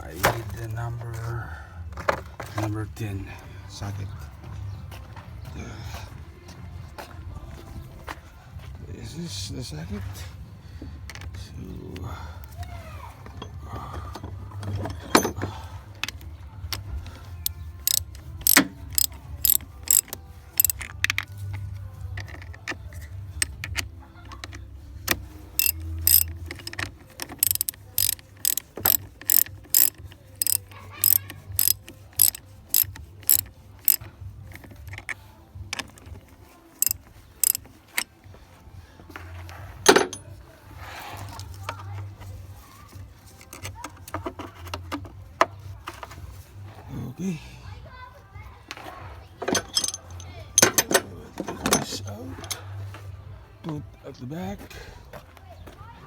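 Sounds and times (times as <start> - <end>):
ratchet wrench clicking: 17.4 - 21.3, 25.1 - 34.1, 36.8 - 38.1, 49.5 - 51.0.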